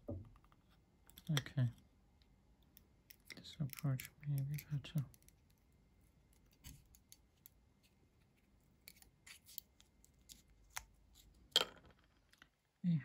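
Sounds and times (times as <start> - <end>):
faint clicks and snips: 2.2 - 10.9.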